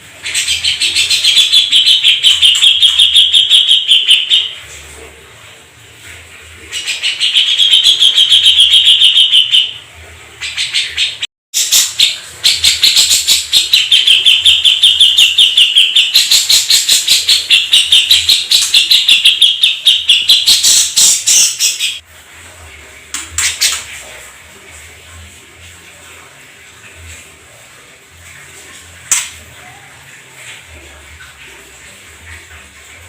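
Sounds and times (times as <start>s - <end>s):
canary singing trills: 0.2s - 4.6s, 6.7s - 9.8s, 10.4s - 22.0s.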